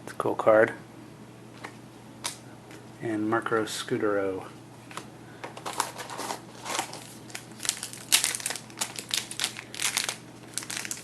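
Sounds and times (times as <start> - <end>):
plastic wrapper crinkling: 5.6 - 11.0.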